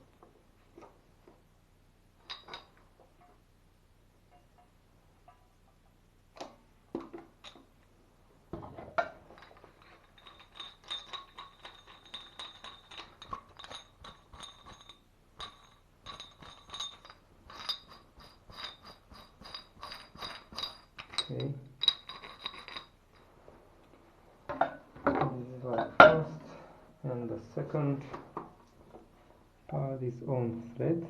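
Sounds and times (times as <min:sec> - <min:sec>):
metal parts clinking: 0:09.0 - 0:23.3.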